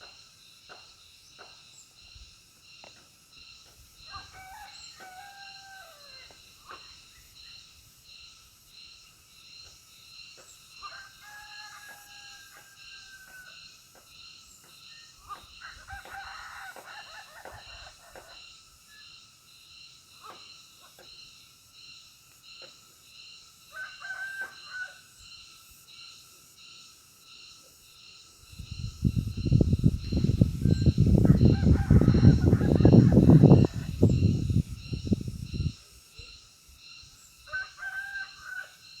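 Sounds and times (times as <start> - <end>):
pulsing insect drone: 0.0 - 39.0
rooster crowing: 4.1 - 6.3, 10.8 - 13.6, 15.6 - 18.2, 23.7 - 25.0, 30.7 - 34.2, 37.5 - 38.8.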